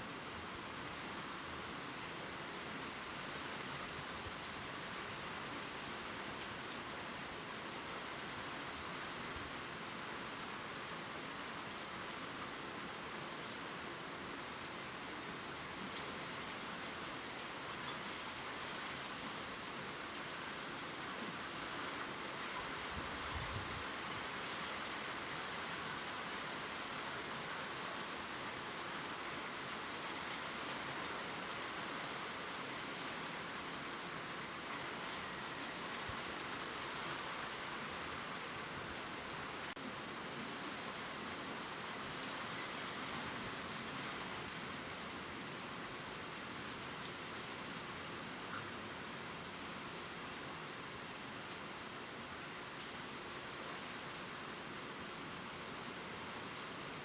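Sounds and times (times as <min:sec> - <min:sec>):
rain pattering on leaves: 0:00.5 - 0:13.8, 0:14.6 - 0:57.0.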